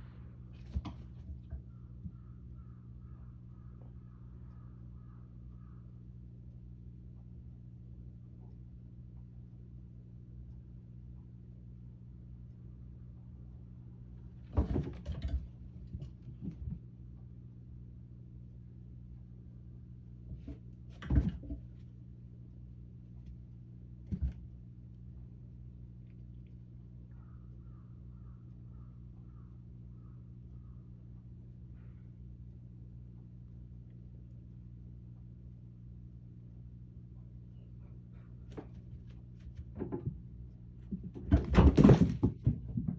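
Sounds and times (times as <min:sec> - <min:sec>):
steady low hum: 0:00.0 - 0:42.9
cats play-fighting thumps and scuffling: 0:00.5 - 0:02.2, 0:14.3 - 0:17.0, 0:20.2 - 0:22.0, 0:23.1 - 0:24.6, 0:38.4 - 0:42.9.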